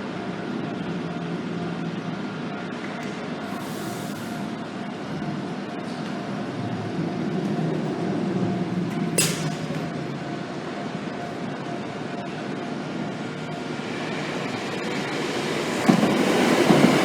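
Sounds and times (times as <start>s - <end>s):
train rumble: 0.0s - 17.0s
level crossing alarm ringing: 9.6s - 17.0s.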